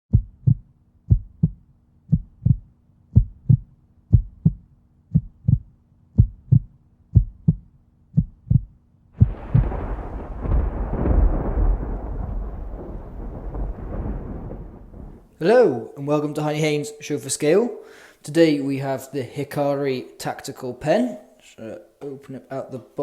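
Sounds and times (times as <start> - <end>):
heartbeat thumps: 0.1 - 11.8
dense rumbling noise: 9.2 - 15.4.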